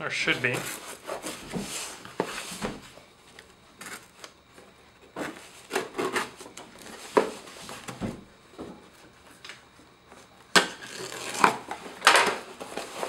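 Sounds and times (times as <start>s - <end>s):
cardboard packaging rubbing: 0.4s - 2.9s.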